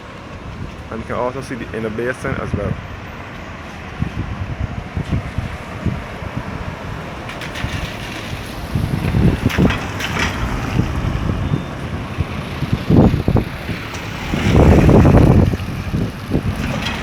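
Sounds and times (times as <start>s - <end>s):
street traffic: 0.0s - 17.0s
wind buffeting microphone: 0.0s - 17.0s.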